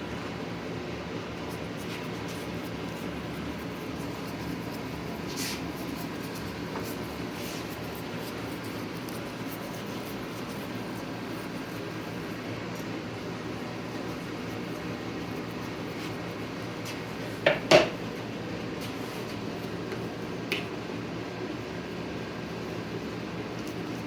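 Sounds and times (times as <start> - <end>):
fan-like room hum: 0.0 - 24.0.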